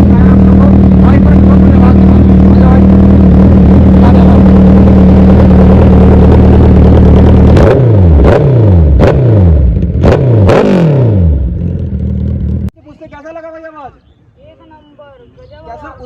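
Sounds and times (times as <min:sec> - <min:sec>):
exhaust cracking: 0:00.0 - 0:12.7
motorcycle engine revving: 0:00.0 - 0:12.7.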